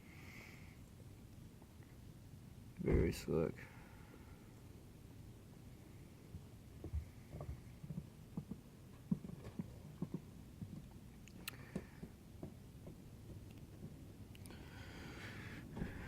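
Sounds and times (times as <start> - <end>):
faint low thumps and knocks: 6.3 - 11.0, 11.6 - 14.2, 15.5 - 16.0.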